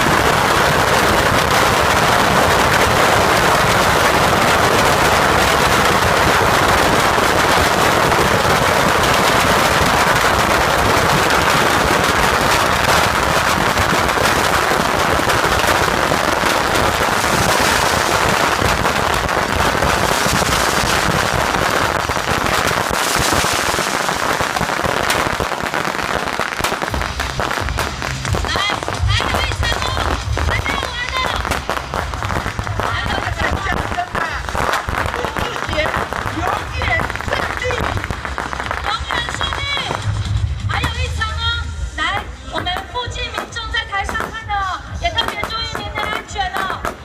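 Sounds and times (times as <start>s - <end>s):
bottle rockets crackling and whooshing: 0.0s - 41.2s.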